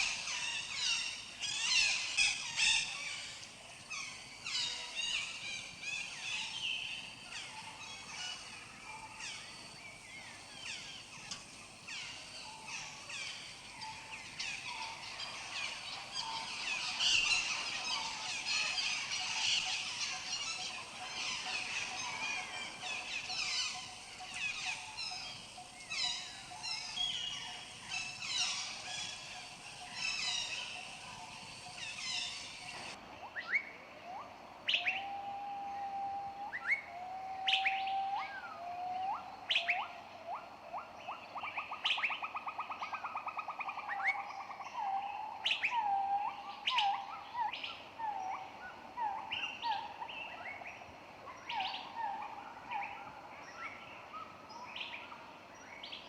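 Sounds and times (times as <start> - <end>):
birds chirping: 9.2 - 33.0.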